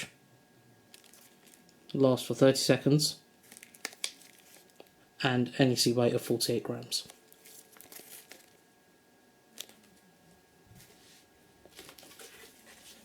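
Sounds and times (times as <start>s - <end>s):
objects rustling and knocking: 7.1s - 8.6s, 10.7s - 13.0s.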